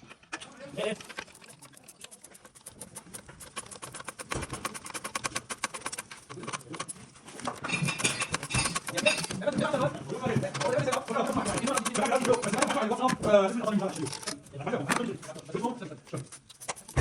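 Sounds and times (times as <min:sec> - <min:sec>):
rapid even clicks: 0:00.0 - 0:13.2.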